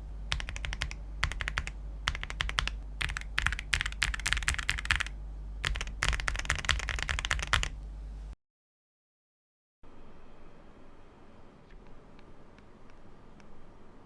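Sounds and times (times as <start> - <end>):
typing on mechanical keyboard: 0.3 - 7.8.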